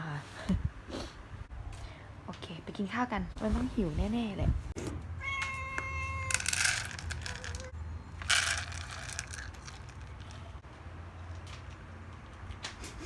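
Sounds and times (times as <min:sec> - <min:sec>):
cat meowing: 0:05.2 - 0:06.4
cat food rattling and rustling: 0:06.2 - 0:10.6.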